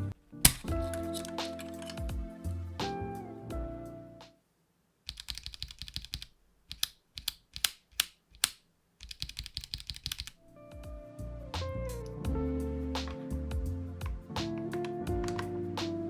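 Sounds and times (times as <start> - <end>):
background music: 0.0 - 4.4, 10.4 - 16.0
mechanical keyboard typing: 0.5 - 2.1, 5.1 - 10.4.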